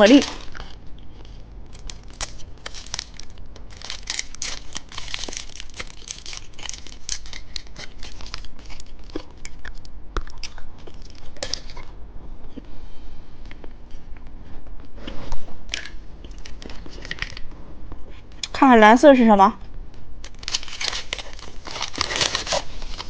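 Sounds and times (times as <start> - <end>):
candy wrapper crinkling: 0.0 - 11.9, 20.2 - 23.0.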